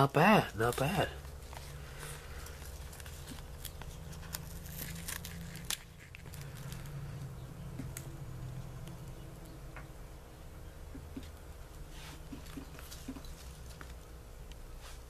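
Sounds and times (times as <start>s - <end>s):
steady low hum: 0.0s - 15.0s
packaging rustling: 0.5s - 7.0s.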